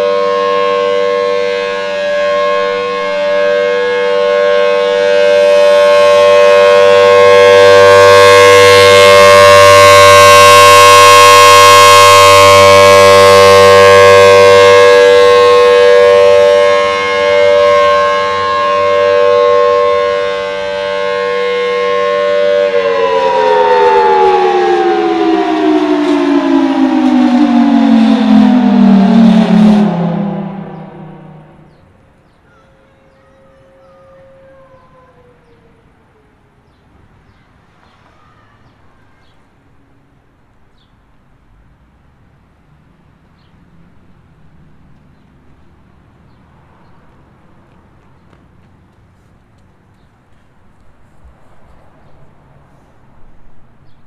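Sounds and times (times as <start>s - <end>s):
warning siren alert tone: 0.0s - 31.9s.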